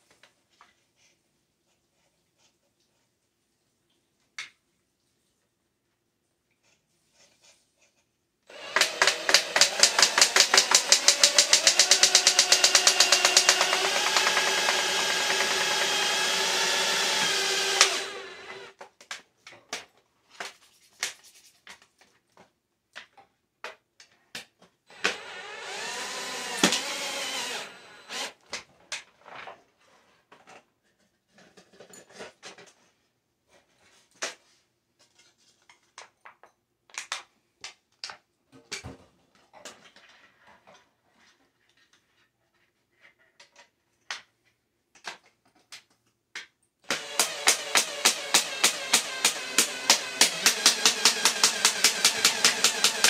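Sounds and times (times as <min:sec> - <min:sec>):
power drill driving screws into sheet metal: 0:08.5 - 0:18.8, 0:24.9 - 0:28.5, 0:46.9 - 0:53.0.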